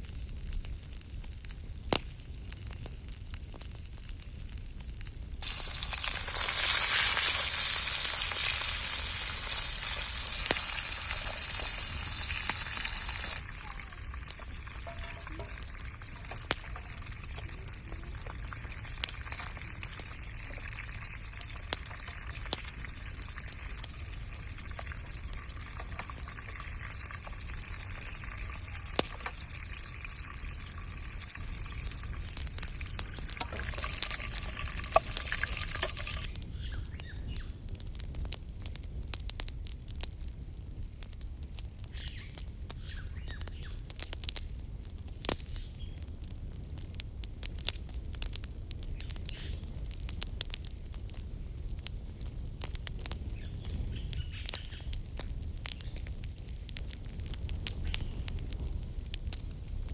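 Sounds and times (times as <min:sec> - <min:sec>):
food sizzling in hot oil: 0:05.4 - 0:37.4, 0:48.3 - 0:59.9.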